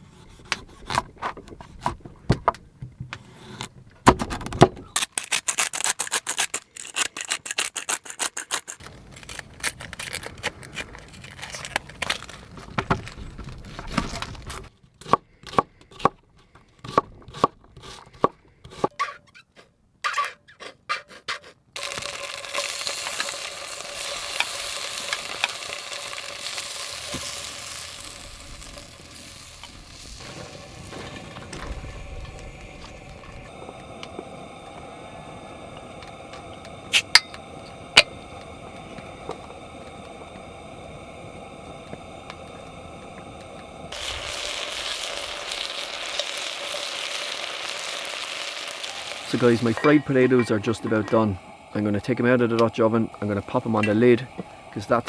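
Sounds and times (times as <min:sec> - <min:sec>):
potatoes sizzling in a pot: 0:21.8 - 0:55.0.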